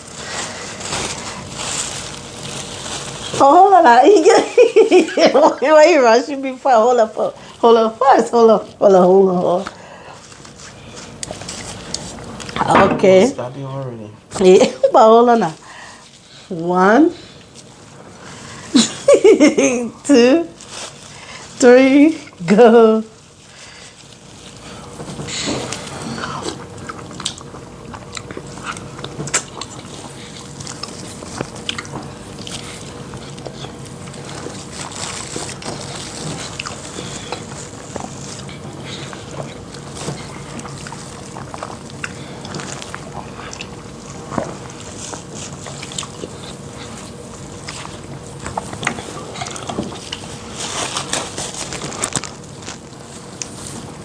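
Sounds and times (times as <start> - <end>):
wet mouth eating sounds: 25.5 - 53.6.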